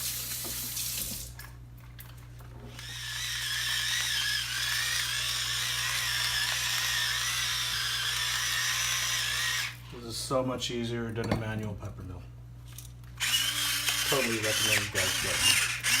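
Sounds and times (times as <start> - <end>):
electric pepper grinder whine: 2.7 - 10.0, 13.2 - 16.0.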